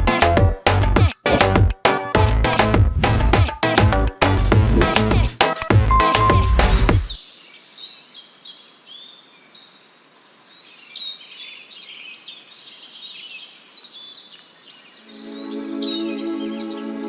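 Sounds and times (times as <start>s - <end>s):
music: 0.0s - 7.2s, 15.0s - 17.0s
birds chirping and trilling: 7.0s - 17.0s.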